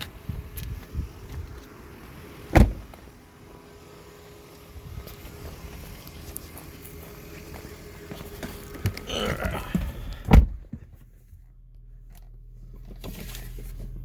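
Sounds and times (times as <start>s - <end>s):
muffled car engine idling: 0.0s - 14.0s
car door shutting: 2.5s - 3.0s, 8.7s - 10.8s.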